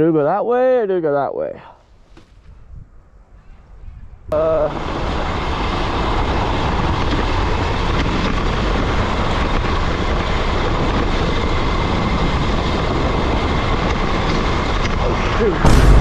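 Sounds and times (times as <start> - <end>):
electric dirt bike riding on snow: 4.5 - 15.6.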